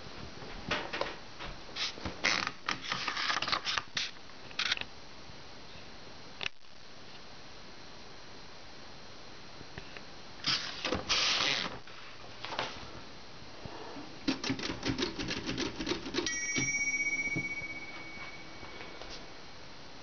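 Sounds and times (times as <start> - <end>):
typewriter clatter: 14.2 - 16.7
typewriter keystrokes: 14.2 - 16.7
typewriter margin bell ringing: 15.6 - 19.1.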